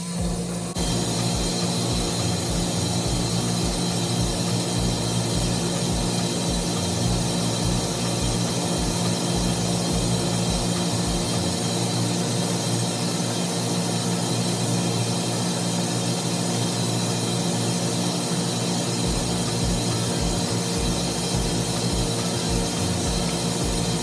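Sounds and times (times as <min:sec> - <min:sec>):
constant low drone: 0:00.0 - 0:12.1, 0:19.0 - 0:24.0
machinery hum and hiss: 0:00.0 - 0:24.0.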